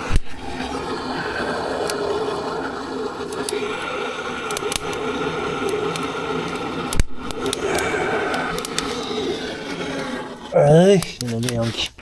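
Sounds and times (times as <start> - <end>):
firewood burning and crackling: 0.0 - 12.0.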